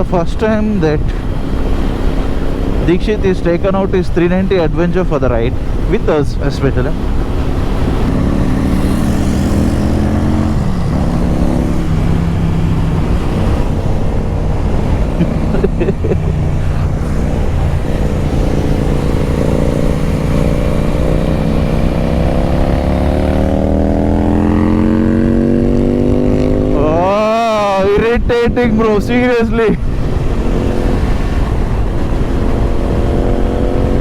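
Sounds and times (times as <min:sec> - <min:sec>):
wind noise: 0:00.0 - 0:34.0
motorcycle engine running: 0:06.8 - 0:27.0, 0:29.8 - 0:34.0.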